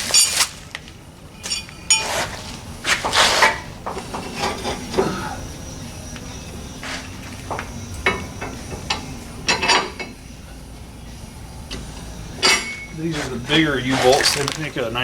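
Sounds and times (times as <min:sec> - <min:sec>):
metal parts rustling and scraping: 0:00.0 - 0:00.8, 0:01.4 - 0:05.3, 0:12.4 - 0:15.0.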